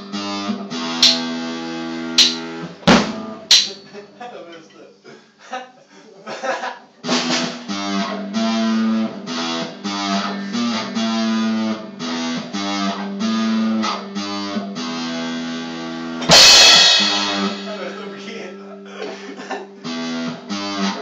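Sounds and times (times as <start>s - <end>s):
guitar chords ringing: 0.0s - 4.0s, 7.7s - 19.0s, 19.7s - 21.0s.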